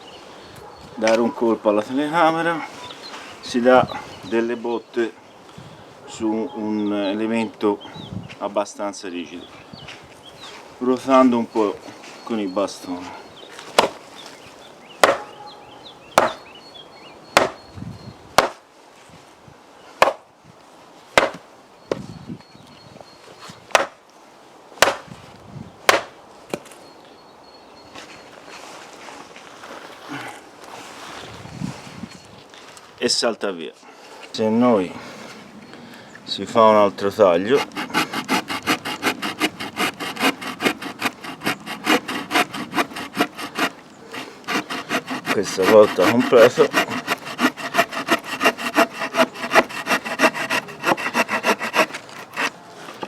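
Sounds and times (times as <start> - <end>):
small saw blade sawing a log: 37.4 - 53.0.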